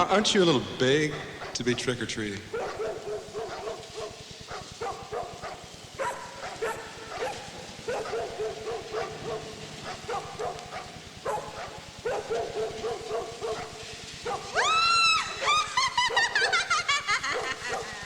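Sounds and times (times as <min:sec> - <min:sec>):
dog barking: 0:00.9 - 0:14.6, 0:15.4 - 0:18.0
dog yelping and whimpering: 0:14.3 - 0:18.0.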